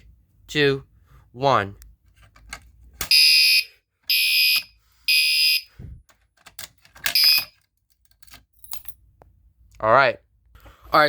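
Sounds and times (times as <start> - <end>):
fire alarm horn blasts: 3.1 - 5.8, 7.2 - 7.5.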